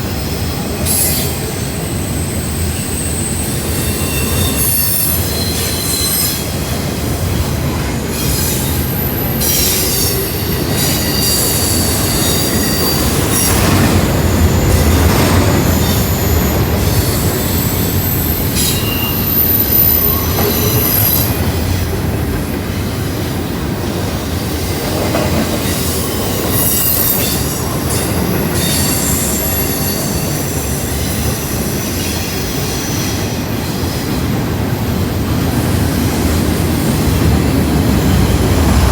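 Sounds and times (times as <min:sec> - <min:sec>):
freight train rumbling: 0:00.0 - 0:38.9
wheel squeal: 0:00.9 - 0:06.6, 0:08.2 - 0:21.8.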